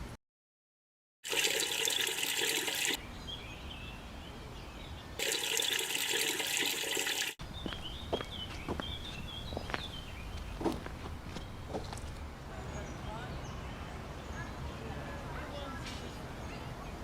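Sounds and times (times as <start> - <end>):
running water bursts: 1.2 - 3.0, 5.2 - 7.4.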